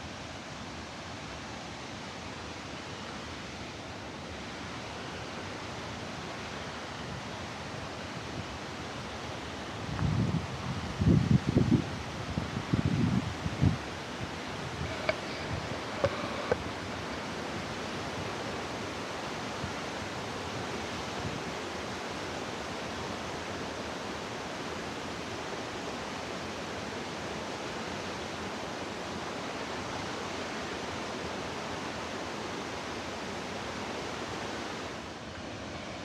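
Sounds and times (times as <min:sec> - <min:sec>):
waterfall rushing: 0:13.8 - 0:36.0.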